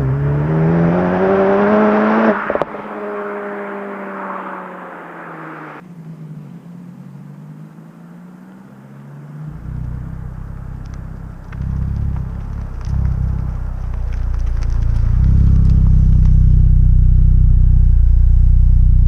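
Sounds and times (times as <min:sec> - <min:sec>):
exhaust crackles and pops: 0:00.0 - 0:05.0, 0:09.5 - 0:19.0
car exhaust rumble: 0:00.0 - 0:19.0.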